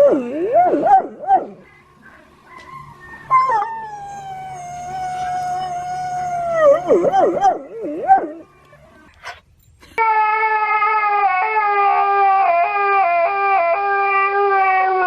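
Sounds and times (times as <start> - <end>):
dog howling: 0.0 - 8.5.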